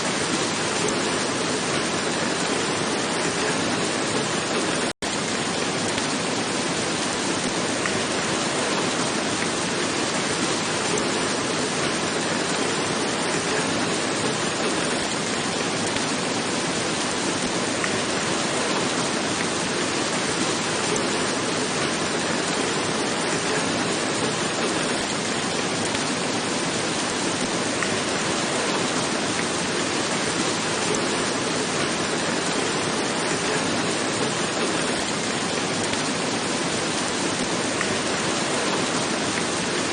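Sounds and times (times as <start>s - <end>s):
rain falling on a roof: 0.0s - 39.9s.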